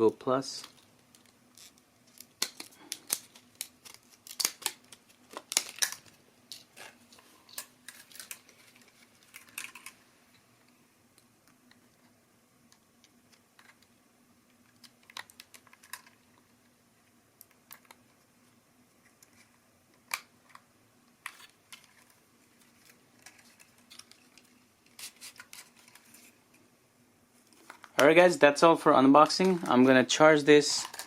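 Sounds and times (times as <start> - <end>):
plastic items clicking: 0.6 - 10.0, 14.7 - 16.5, 30.7 - 31.0.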